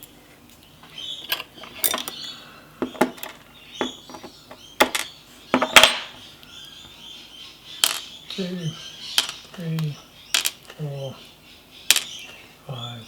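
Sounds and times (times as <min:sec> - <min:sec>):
small metal clicks and clinks: 0:01.2 - 0:02.3.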